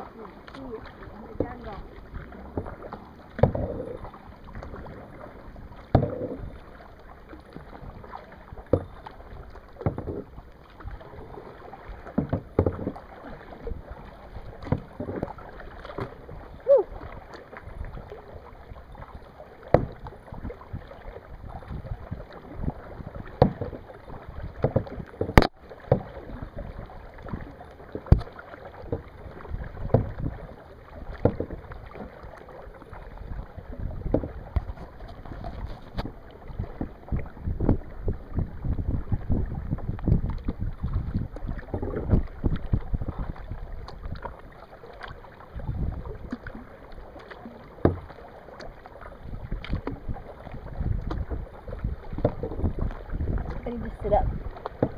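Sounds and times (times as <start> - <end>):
paddle splashing in water: 0.0 - 54.9
paddle knocks: 0.4 - 18.1, 19.3 - 54.9
wind rumbling on microphone: 19.8 - 25.5, 28.9 - 32.3, 32.9 - 48.2, 49.0 - 54.9.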